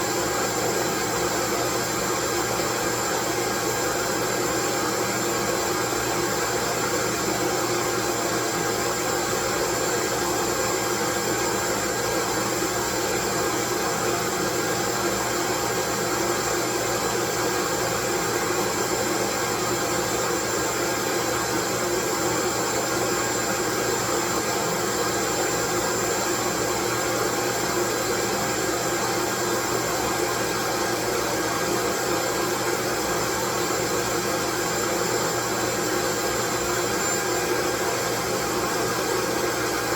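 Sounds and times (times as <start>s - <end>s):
thin high whine: 32.0s - 39.9s.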